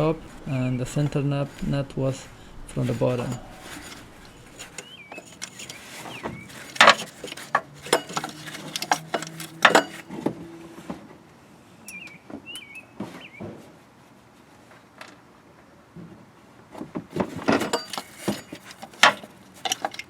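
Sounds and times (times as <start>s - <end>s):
low steady hum: 0.0s - 10.8s
short squeaks: 0.3s - 10.0s
metal clinks of tools: 3.2s - 10.0s, 17.5s - 20.0s.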